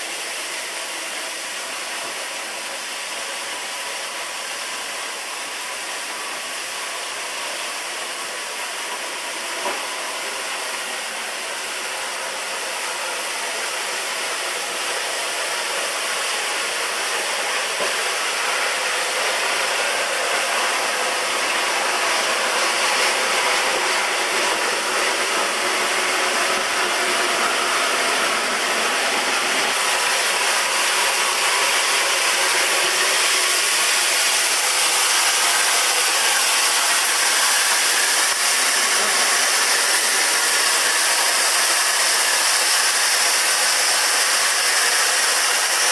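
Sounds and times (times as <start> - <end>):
mortar spray hissing: 14.6 - 45.9.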